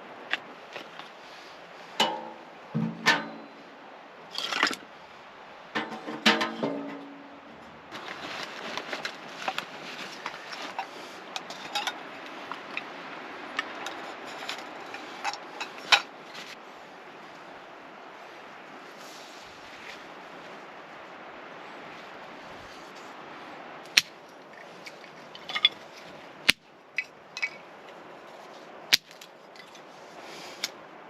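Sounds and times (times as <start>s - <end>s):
camp gear knocking and clattering: 2.0s - 3.6s, 5.7s - 16.6s
ringing metal clanks: 2.0s - 3.6s
light clicks and rustles: 5.8s - 16.6s, 23.9s - 26.3s, 26.9s - 30.8s.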